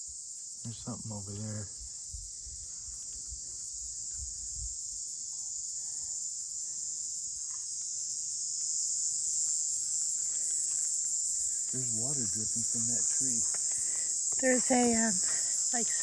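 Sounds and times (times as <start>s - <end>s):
high-pitched insect chorus: 0.0s - 16.0s.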